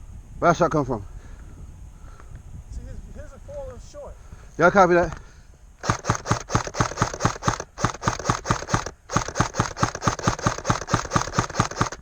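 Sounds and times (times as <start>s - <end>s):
airsoft gun rapid shots: 5.8s - 12.0s.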